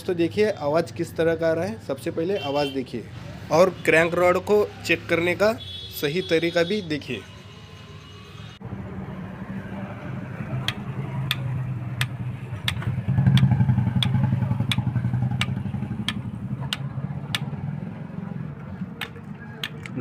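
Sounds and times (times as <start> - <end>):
sharp metallic clicks: 10.6 - 17.6, 18.9 - 20.0.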